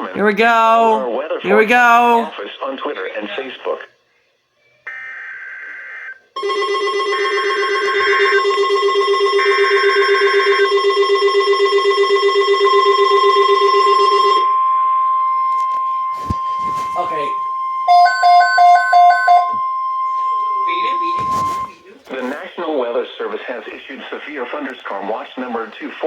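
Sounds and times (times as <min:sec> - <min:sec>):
steady warning tone: 0:07.7 - 0:21.8.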